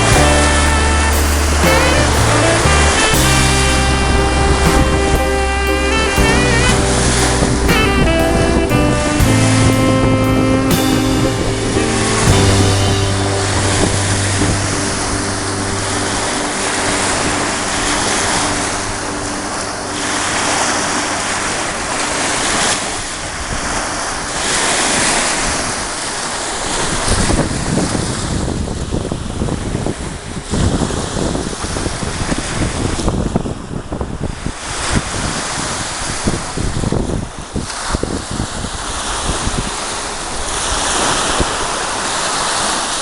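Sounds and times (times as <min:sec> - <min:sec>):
sea waves washing ashore: 0:00.0 - 0:43.0
wind buffeting microphone: 0:00.0 - 0:43.0.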